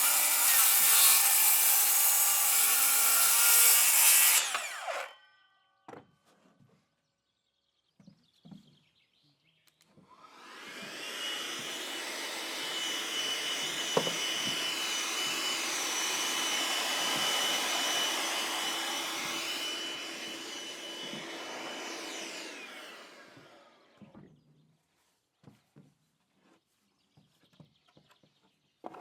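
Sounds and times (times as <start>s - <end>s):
power tool motor whining: 0.0s - 5.2s, 10.2s - 23.9s.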